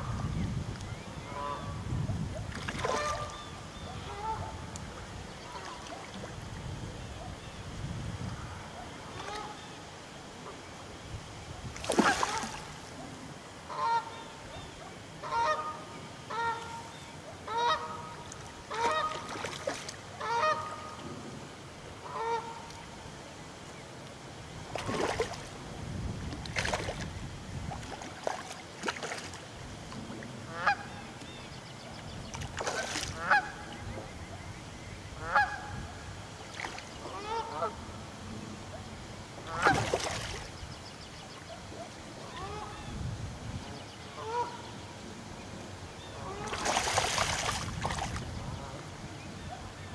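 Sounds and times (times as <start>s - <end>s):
geese honking: 2.9s - 4.6s, 15.2s - 16.9s, 17.5s - 19.3s, 20.2s - 21.0s, 30.5s - 31.0s, 33.1s - 33.7s, 35.2s - 35.7s, 37.1s - 37.8s, 39.4s - 39.8s, 44.2s - 44.6s.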